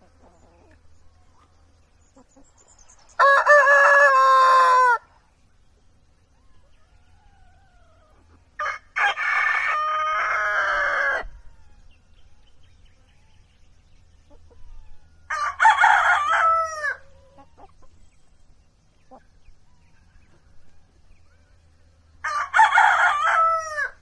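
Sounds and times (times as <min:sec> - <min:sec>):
rooster crowing: 0:03.2 - 0:05.1, 0:06.9 - 0:12.0, 0:15.3 - 0:17.2, 0:22.2 - 0:24.0.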